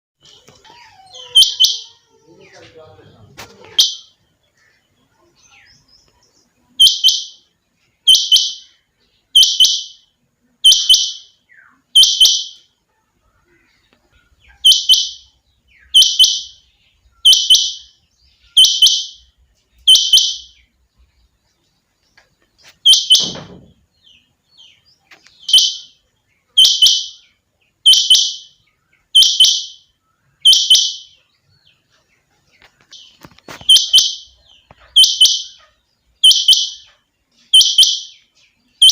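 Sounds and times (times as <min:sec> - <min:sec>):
quail calling: 0:00.3 - 0:04.8, 0:10.6 - 0:12.7, 0:13.5 - 0:16.6, 0:17.2 - 0:20.6, 0:25.4 - 0:31.2, 0:32.8 - 0:38.2
low thump: 0:23.2 - 0:23.8.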